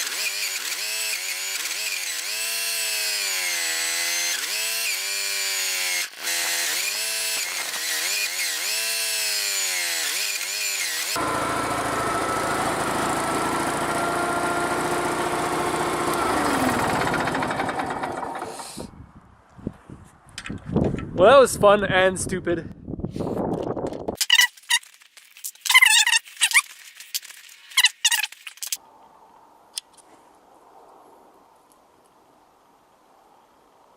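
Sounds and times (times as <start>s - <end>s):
power tool motor cutting wood: 0.0s - 18.8s
grinding machine whine: 10.4s - 18.6s.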